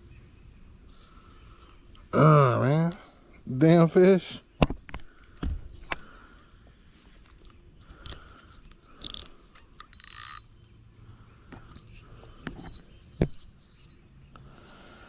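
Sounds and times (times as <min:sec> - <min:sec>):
insects chirping: 0:00.0 - 0:15.0
fishing reel rasps: 0:07.9 - 0:10.6.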